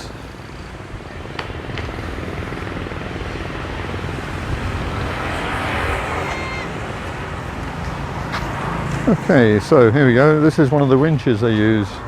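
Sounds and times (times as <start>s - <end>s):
motor engine droning: 0.0s - 9.8s.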